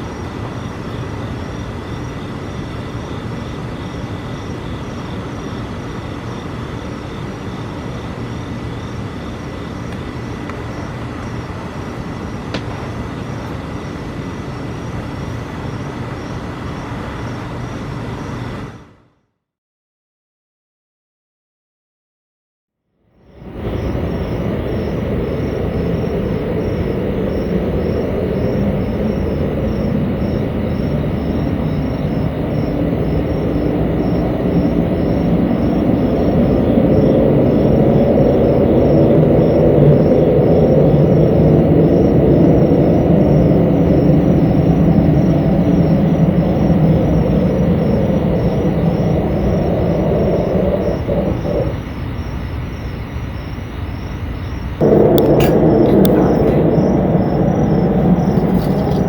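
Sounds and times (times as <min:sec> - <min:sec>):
low rumbling drone: 0:23.2 - 0:52.3, 0:54.8 - 0:59.0.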